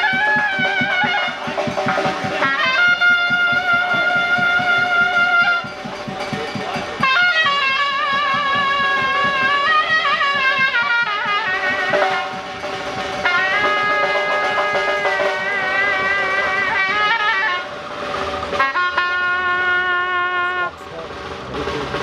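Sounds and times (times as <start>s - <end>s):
shawm playing ornamented melody: 0.0s - 22.0s
steady drum beat: 0.0s - 22.0s.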